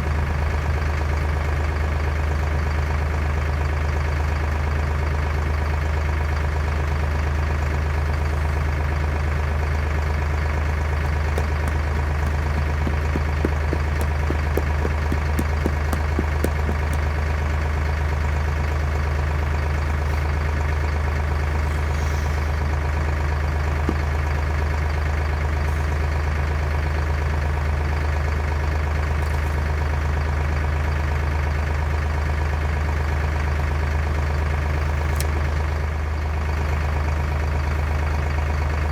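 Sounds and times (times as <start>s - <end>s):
tractor engine running: 5.2s - 33.2s.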